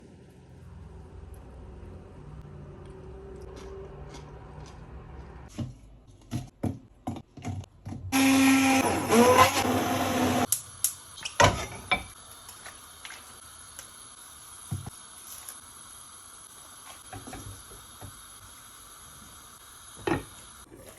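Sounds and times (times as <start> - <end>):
kitchen appliance motor running: 8.1 - 10.5.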